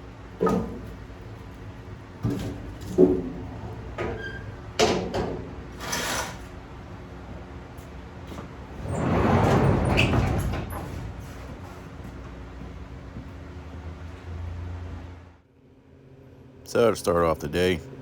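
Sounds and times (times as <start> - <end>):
sliding scraping noise: 5.7 - 6.5, 8.7 - 12.2.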